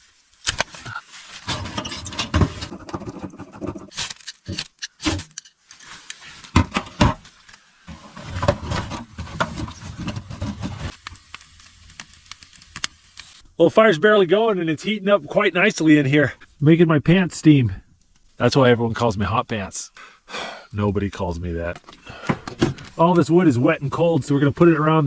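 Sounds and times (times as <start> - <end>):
rustling: 0.0 - 13.4
firewood knocking and clattering: 1.4 - 3.9, 6.4 - 11.0, 21.8 - 23.0.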